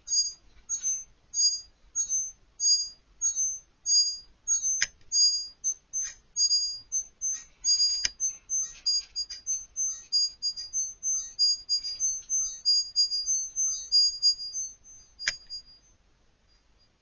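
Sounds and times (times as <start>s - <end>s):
short high-pitched squeaks: 0.1s - 16.0s.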